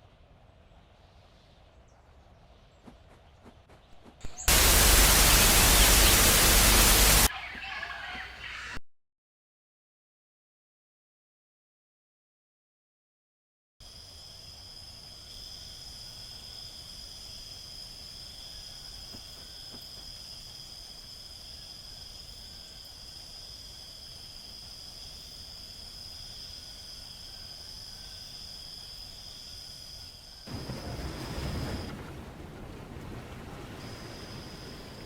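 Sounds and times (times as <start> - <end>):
insect chorus: 4.3 - 7.3, 13.8 - 35.0.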